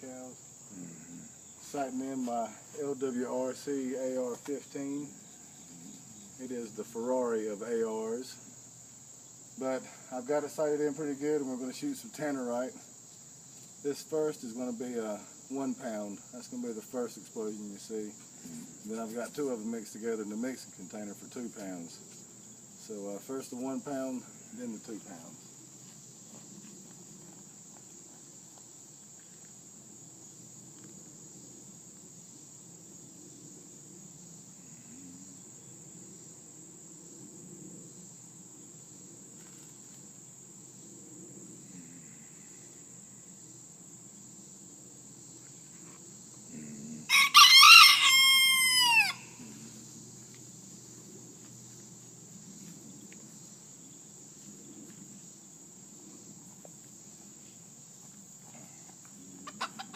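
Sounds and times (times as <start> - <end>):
crickets chirring: 0.0 - 59.9
rooster crowing: 47.0 - 49.4.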